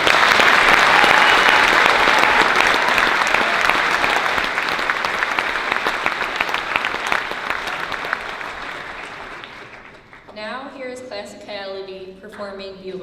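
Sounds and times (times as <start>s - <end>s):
audience applauding: 0.0s - 10.4s.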